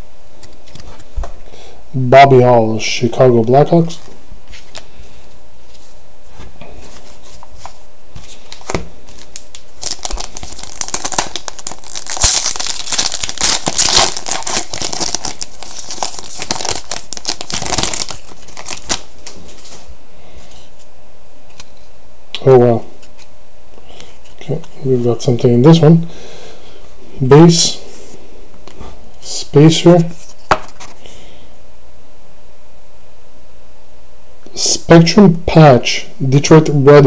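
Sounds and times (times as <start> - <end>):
wrapper tearing and crinkling: 8.6 - 19.8.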